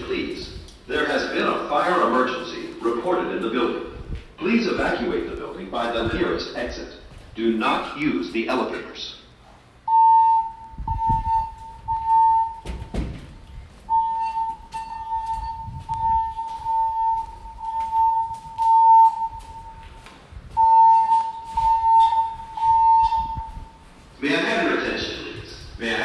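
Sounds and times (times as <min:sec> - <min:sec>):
pulsing high alarm tone: 0:09.9 - 0:12.9, 0:13.8 - 0:23.9
low thumps: 0:09.9 - 0:24.0.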